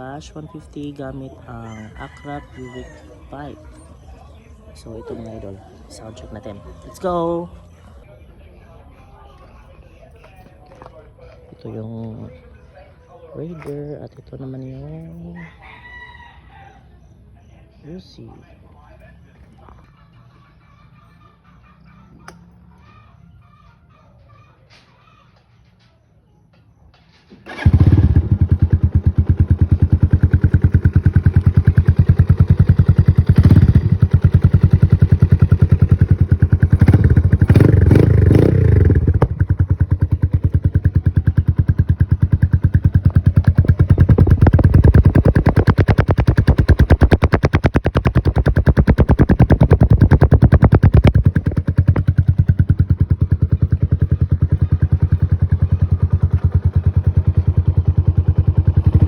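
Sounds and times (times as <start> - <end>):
motorcycle engine starting: 27.0 - 59.0
motorcycle exhaust revving: 27.5 - 59.0.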